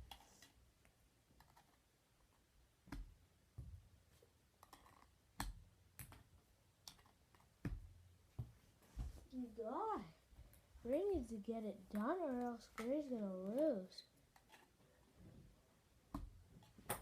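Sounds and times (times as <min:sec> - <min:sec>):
plastic balls bouncing off hoop: 0:04.6 - 0:08.6.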